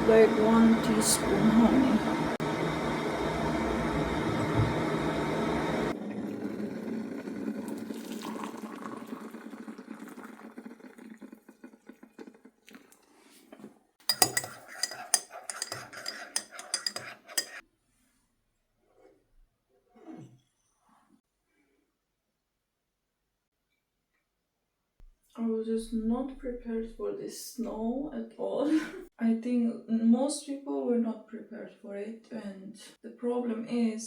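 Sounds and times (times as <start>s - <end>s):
teaspoon clinking against mug: 14.0s - 17.6s.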